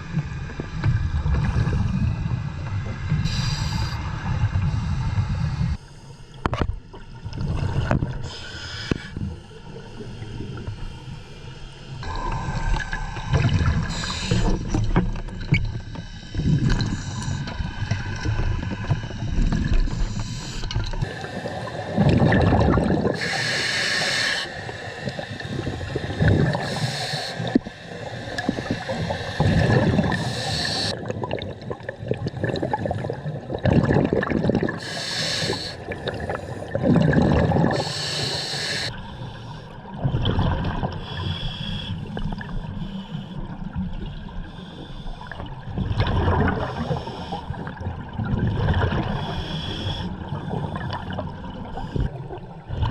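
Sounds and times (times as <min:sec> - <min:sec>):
exhaled air bubbling underwater: 0:00.0 - 0:52.9
regulator air hiss on inhale: 0:03.2 - 0:06.5, 0:08.2 - 0:14.8, 0:15.8 - 0:17.9, 0:18.8 - 0:22.4, 0:23.0 - 0:31.0, 0:34.8 - 0:36.8, 0:37.7 - 0:39.8, 0:41.0 - 0:43.5, 0:44.4 - 0:45.5, 0:46.6 - 0:47.8, 0:49.2 - 0:51.0.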